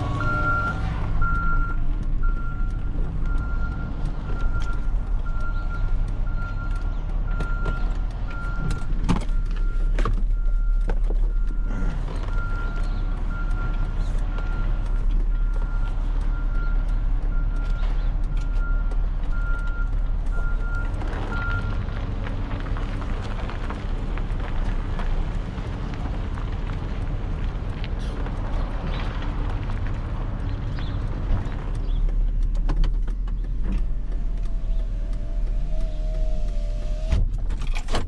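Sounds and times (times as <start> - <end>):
heavy vehicle engine rumbling: 0.0 - 38.0
reversing alarm beeping: 0.2 - 7.8.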